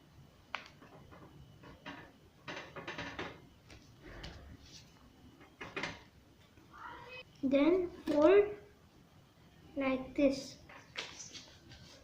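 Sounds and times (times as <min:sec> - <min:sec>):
paper folding and rustling: 0:10.9 - 0:12.0.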